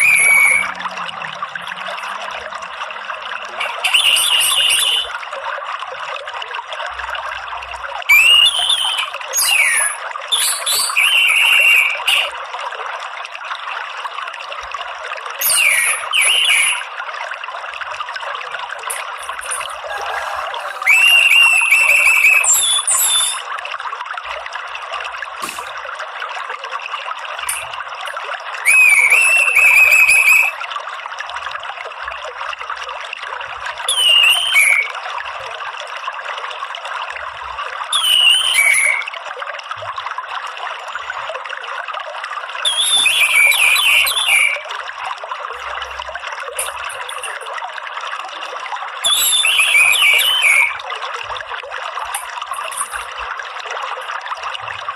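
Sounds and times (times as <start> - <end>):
thrush whistled calls: 0.0 - 0.8, 3.6 - 5.1, 8.1 - 12.3, 15.4 - 16.9, 18.9 - 23.5, 28.6 - 30.6, 33.9 - 35.0, 37.9 - 39.1, 42.6 - 44.7, 49.0 - 50.8
trickling water: 0.0 - 54.9.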